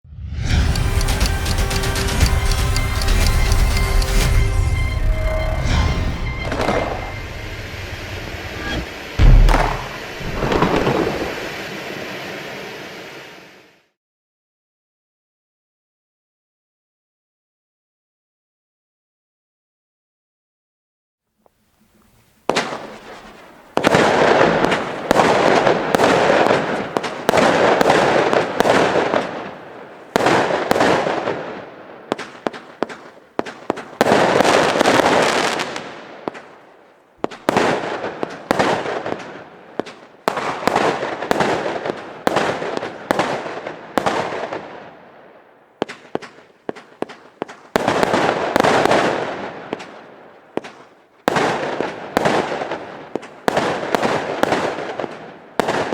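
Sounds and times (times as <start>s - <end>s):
firework shots: 6.3s - 13.4s, 22.4s - 55.9s
hiss of bursting effects: 7.0s - 13.8s.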